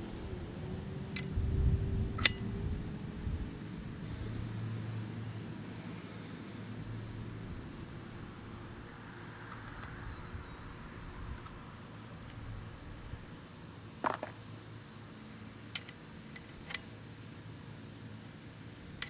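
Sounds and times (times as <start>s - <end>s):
low steady hum: 0.0s - 13.6s
small sharp clicks: 2.2s - 2.6s, 15.7s - 17.0s.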